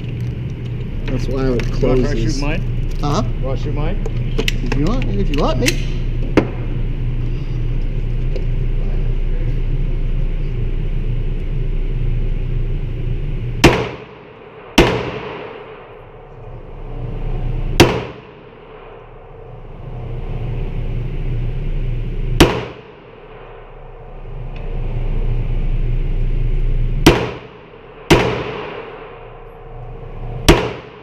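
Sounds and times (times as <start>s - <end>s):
low rumble: 0.0s - 31.0s
gunshots with echo: 13.6s - 15.9s, 17.8s - 19.0s, 22.4s - 23.5s, 27.0s - 29.2s, 30.5s - 31.0s.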